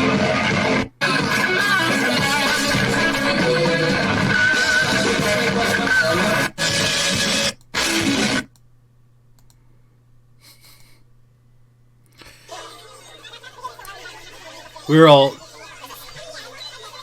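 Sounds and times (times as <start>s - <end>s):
rock band playing live: 0.0s - 7.5s
low steady hum: 8.5s - 12.4s.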